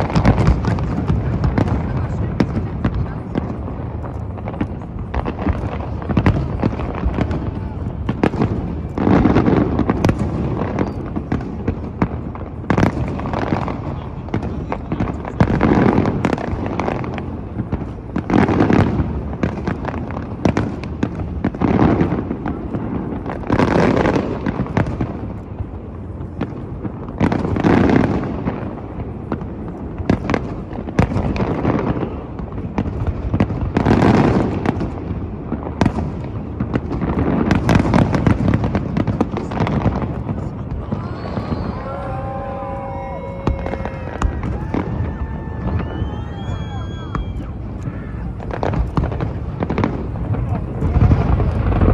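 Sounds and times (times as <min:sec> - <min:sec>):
fireworks crackling and popping: 0:00.0 - 0:51.9.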